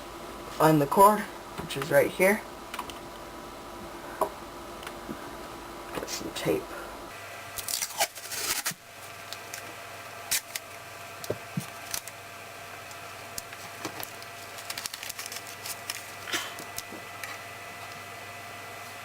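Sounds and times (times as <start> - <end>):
tape tearing off roll: 7.6 - 8.8
tape and cable rustling: 7.6 - 12.2, 12.8 - 18.0.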